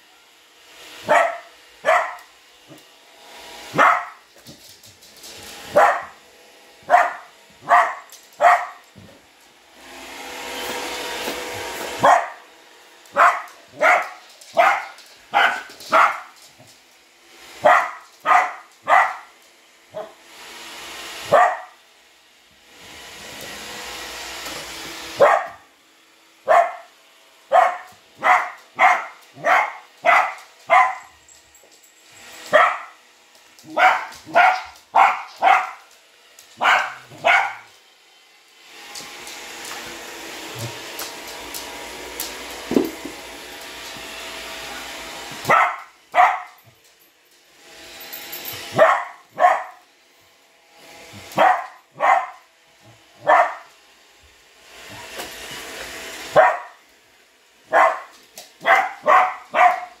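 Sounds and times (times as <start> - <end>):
dog barking: 1.1 - 2.3, 3.7 - 4.2, 5.7 - 6.2, 6.9 - 8.8, 12.0 - 12.4, 13.1 - 16.4, 17.6 - 19.3, 20.0 - 20.2, 21.3 - 21.8, 25.2 - 25.6, 26.4 - 26.9, 27.5 - 31.1, 32.5 - 33.0, 33.7 - 35.8, 36.6 - 37.7, 45.5 - 46.6, 48.7 - 49.8, 51.3 - 52.4, 53.2 - 53.7, 56.3 - 56.8, 57.7 - 60.0.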